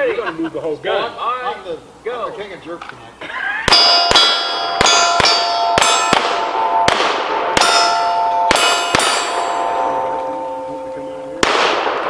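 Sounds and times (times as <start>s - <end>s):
pistol shots: 3.7s - 9.6s, 11.4s - 12.0s
steel plate clanging: 3.7s - 12.0s.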